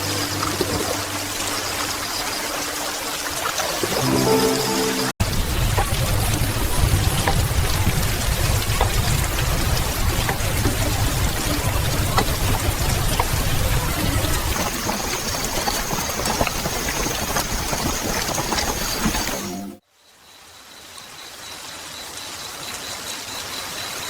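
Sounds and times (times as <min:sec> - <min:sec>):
faint thin high tone: 0:03.9 - 0:05.2.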